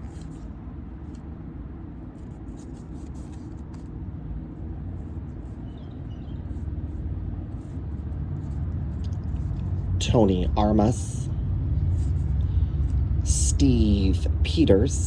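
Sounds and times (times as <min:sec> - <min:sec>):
cards ticking and rustling: 0:08.1 - 0:10.0
low rumble: 0:08.3 - 0:15.0.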